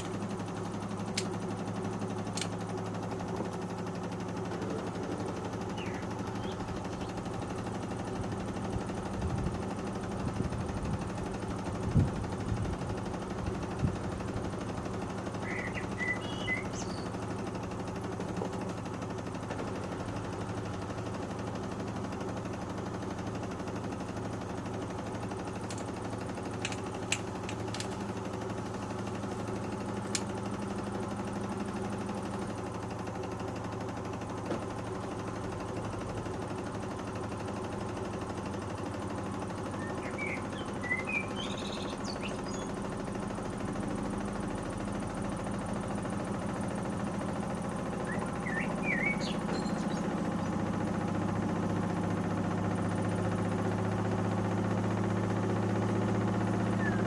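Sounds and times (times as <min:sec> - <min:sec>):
washing machine spinning: 0:00.0 - 0:57.0
sharp clicks: 0:26.6 - 0:28.0.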